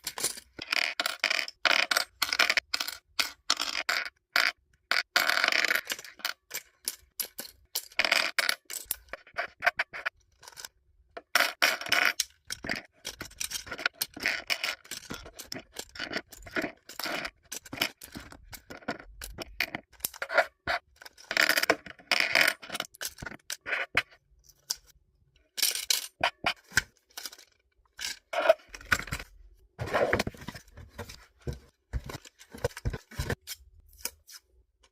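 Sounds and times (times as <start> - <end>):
small plastic pieces clattering: 0.0 - 9.1, 24.5 - 33.6.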